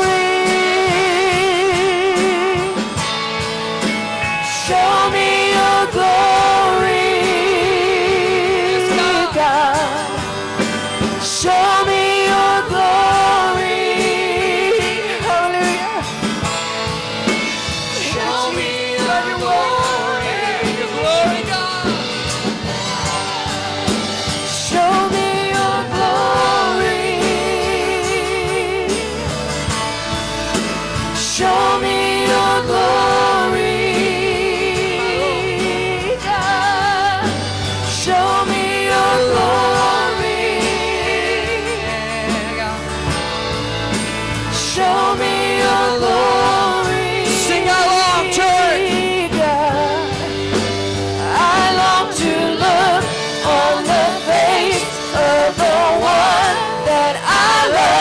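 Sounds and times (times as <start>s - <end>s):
person singing with vibrato: 0.0s - 29.9s, 30.9s - 58.0s
band playing low chords: 0.0s - 58.0s.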